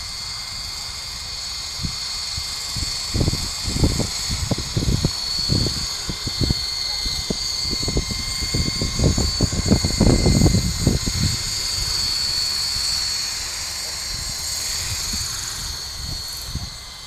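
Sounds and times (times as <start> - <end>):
model helicopter whine: 0.0 - 17.0
gusty low rumble: 2.8 - 12.8.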